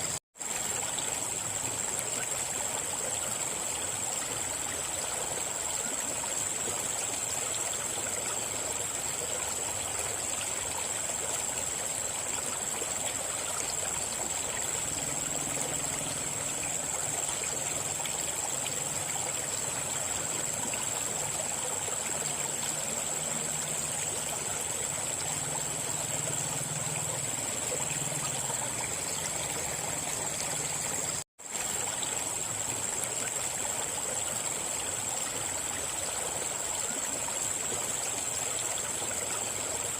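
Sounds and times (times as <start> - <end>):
river water flowing over stones: 0.0 - 39.9.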